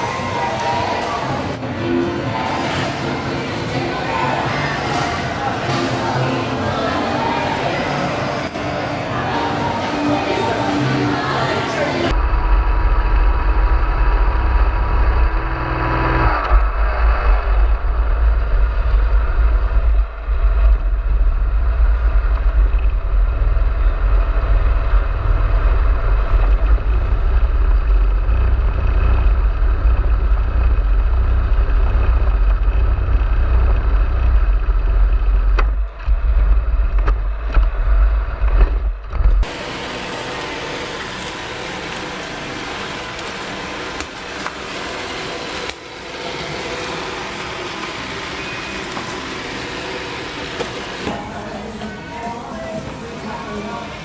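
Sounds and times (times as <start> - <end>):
vehicle engine rumbling: 12.1 - 52.0.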